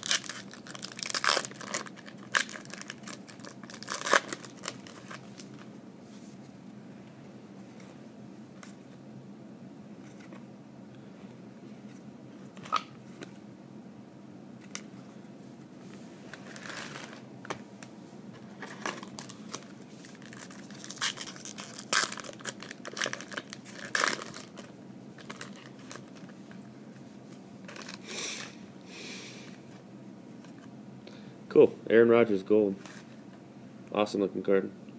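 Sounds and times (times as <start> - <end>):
foil wrappers tearing and crinkling: 0.0 - 5.6, 18.7 - 26.3.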